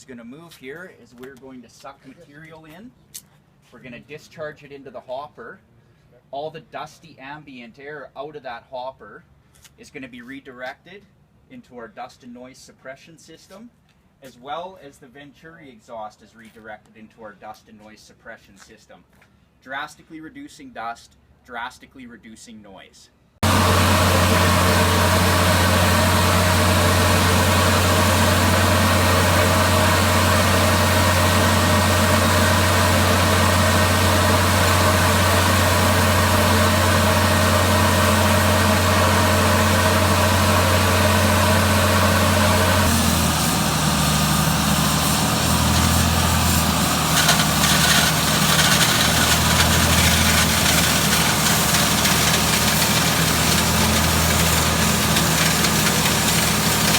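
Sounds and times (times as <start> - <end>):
industrial vacuum humming: 23.4 - 56.9
rough scratchy noise: 45.0 - 56.9.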